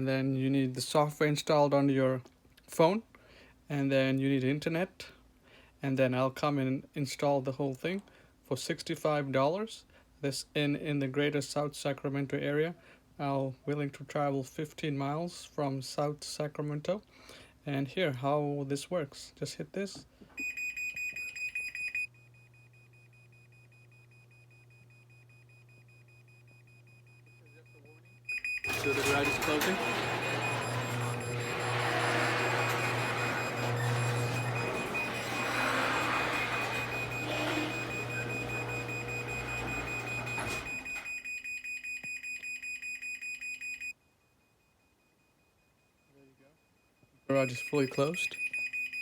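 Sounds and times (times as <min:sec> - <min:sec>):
rapid even beeping: 0:27.2 - 0:41.3
garage door motor humming: 0:28.3 - 0:41.1.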